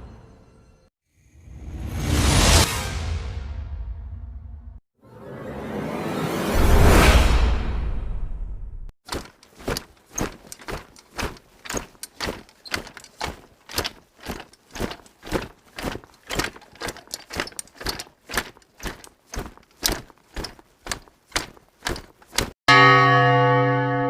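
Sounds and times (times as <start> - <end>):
footsteps knocking: 9.1 - 22.6.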